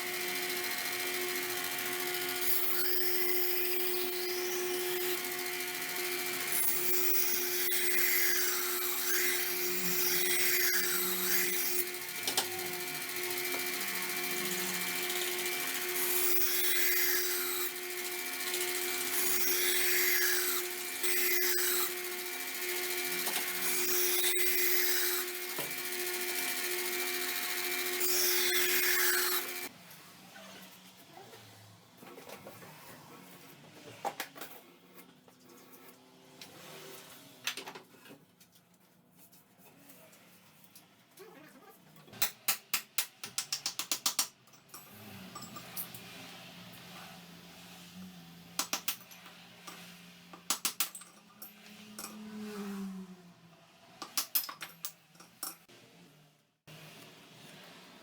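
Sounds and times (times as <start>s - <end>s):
electric power tool humming: 0.0s - 29.7s.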